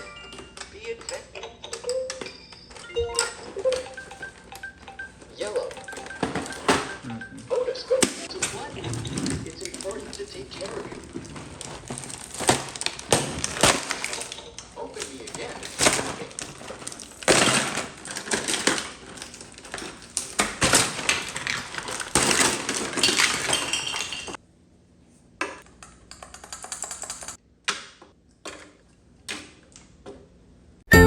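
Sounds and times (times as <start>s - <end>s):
plastic toy pieces clattering: 8.3s - 24.4s.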